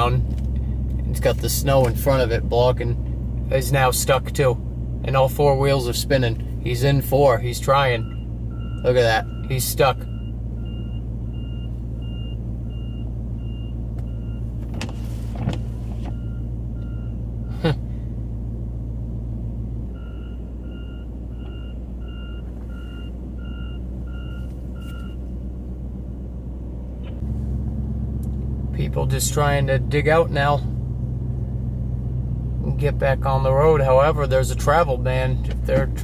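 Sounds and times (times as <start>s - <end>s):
low engine hum: 0.0s - 36.0s
reversing alarm beeping: 8.0s - 14.5s, 16.1s - 17.6s, 19.9s - 25.2s.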